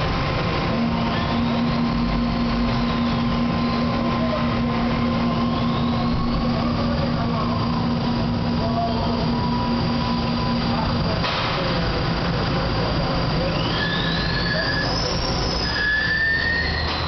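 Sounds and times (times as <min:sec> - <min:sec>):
faint high whine: 0:00.0 - 0:17.0
lathe machine hum: 0:00.0 - 0:17.0.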